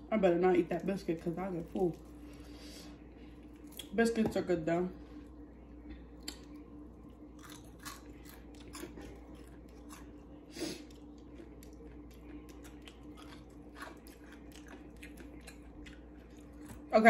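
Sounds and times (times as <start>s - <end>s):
person chewing and crunching food: 6.1s - 17.0s.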